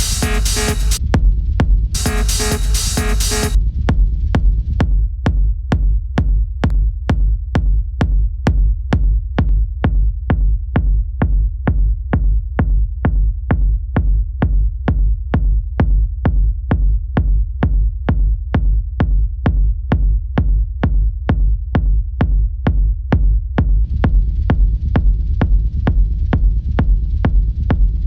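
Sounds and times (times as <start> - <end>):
drum machine hits: 0.0 - 4.0
deep bass: 0.0 - 28.0.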